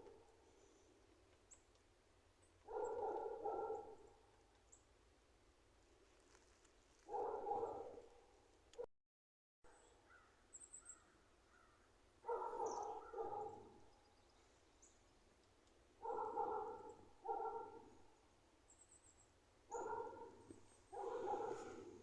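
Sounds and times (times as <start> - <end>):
dog barking: 2.6 - 4.2, 7.1 - 8.2, 12.2 - 13.9, 16.0 - 18.2, 19.7 - 22.0
faint high bird chirps: 9.7 - 15.1.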